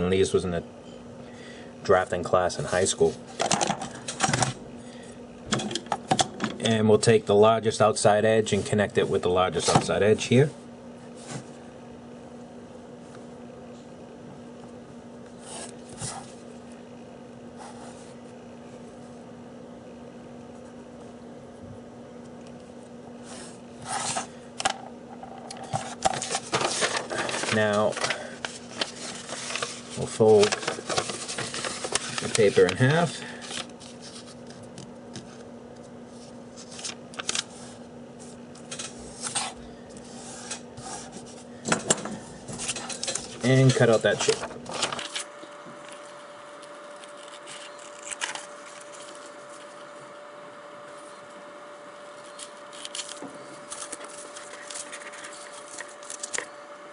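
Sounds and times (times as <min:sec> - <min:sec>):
steady low hum: 0:00.0 - 0:56.9
paper rustling and folding: 0:25.6 - 0:35.4, 0:36.1 - 0:41.5, 0:42.1 - 0:50.0, 0:52.2 - 0:56.5.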